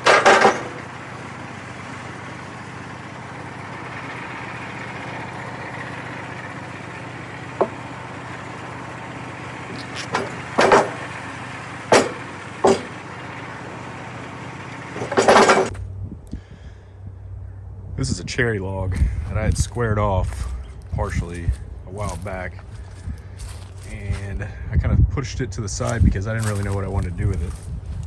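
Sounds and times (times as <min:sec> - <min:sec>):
sharp knocks and clanks: 0:00.0 - 0:00.9, 0:09.7 - 0:11.1, 0:11.9 - 0:13.0, 0:15.0 - 0:15.8
engine running: 0:00.0 - 0:28.0.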